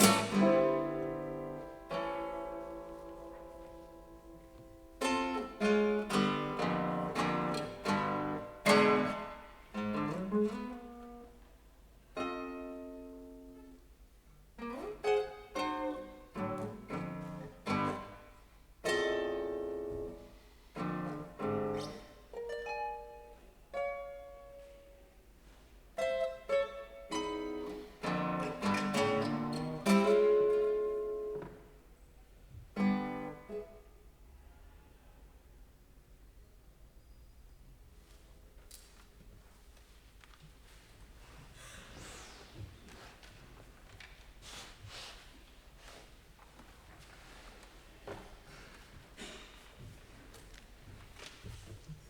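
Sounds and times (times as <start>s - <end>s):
sharp plucked and struck notes: 0.0s - 10.3s.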